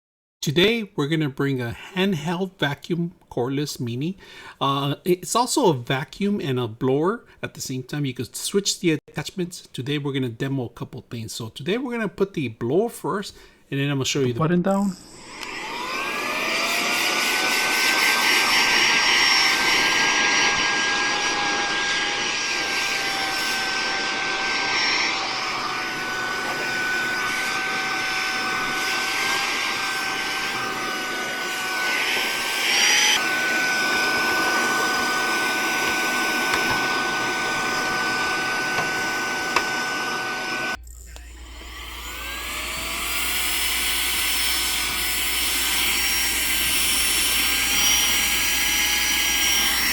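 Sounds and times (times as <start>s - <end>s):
vacuum blower motor whine: 15.0s - 49.9s.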